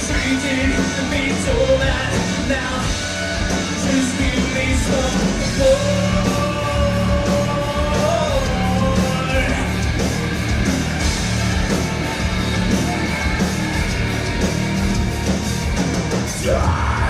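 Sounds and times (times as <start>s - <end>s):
live rock band playing: 0.0s - 17.0s.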